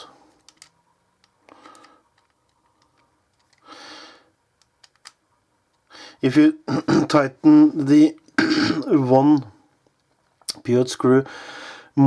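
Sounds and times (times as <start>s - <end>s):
faint clicks of small metal parts: 0.3s - 3.7s, 4.6s - 5.9s.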